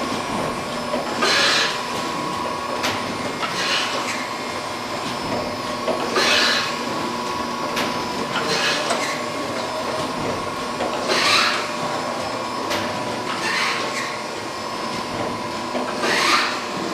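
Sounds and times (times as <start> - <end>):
surface grinder whining: 1.2 - 1.9, 16.0 - 16.6.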